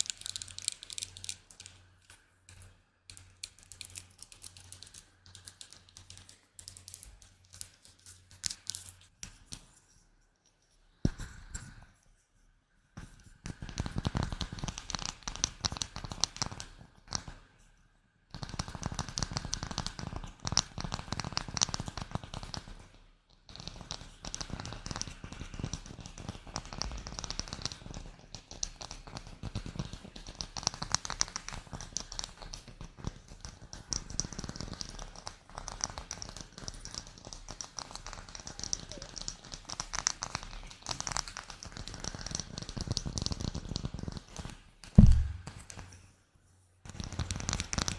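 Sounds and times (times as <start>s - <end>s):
rapid tapping and crackling: 13.4s - 17.4s, 18.4s - 45.8s, 46.8s - 47.9s.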